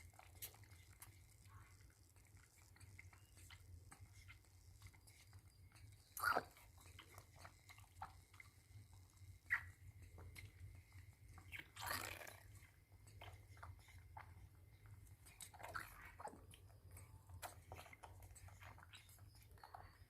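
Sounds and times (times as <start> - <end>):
baby monkey mouth sounds: 5.1 - 8.5, 9.1 - 10.6, 11.4 - 14.5.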